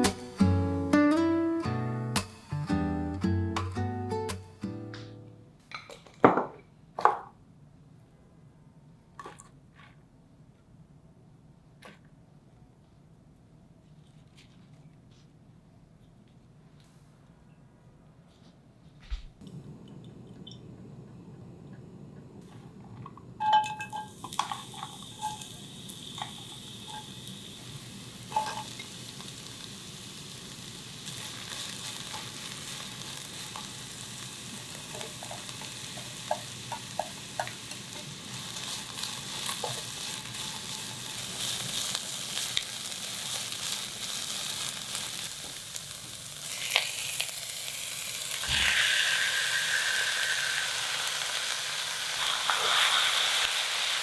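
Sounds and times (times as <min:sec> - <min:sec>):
food sizzling in a pan: 0:00.0 - 0:01.5, 0:22.5 - 0:54.0
utensil clinking: 0:23.0 - 0:25.6.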